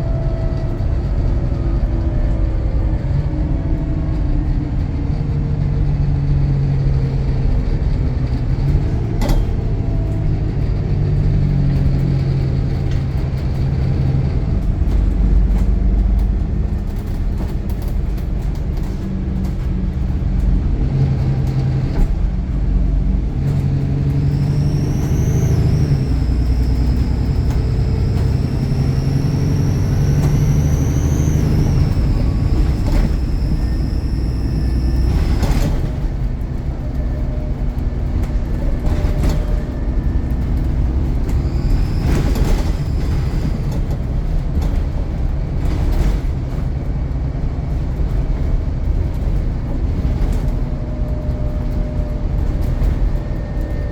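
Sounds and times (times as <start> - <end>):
bus diesel engine accelerating: 0.0 - 53.9
turbocharger whistle: 24.1 - 35.9, 41.2 - 43.7.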